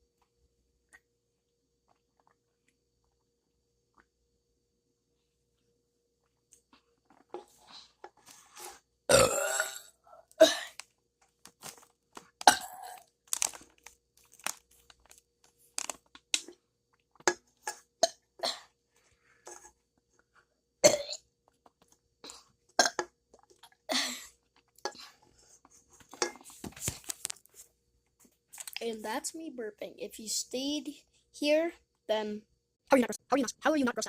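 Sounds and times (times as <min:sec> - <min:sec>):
person burping: 0:09.1 - 0:10.8, 0:12.4 - 0:13.1, 0:20.8 - 0:21.2, 0:22.3 - 0:23.1.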